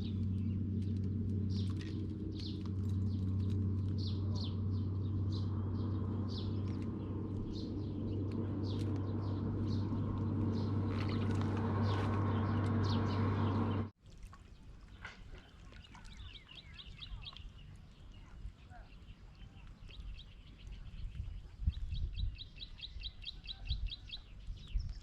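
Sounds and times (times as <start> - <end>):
steady low hum: 0.0 - 13.9
small birds chirping: 0.0 - 25.0.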